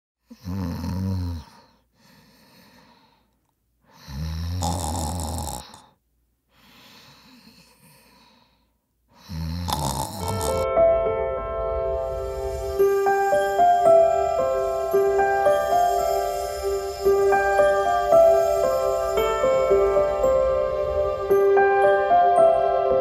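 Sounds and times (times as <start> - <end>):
person snoring: 0.3 - 3.2, 3.9 - 6.0, 9.2 - 10.7
music: 9.9 - 23.0.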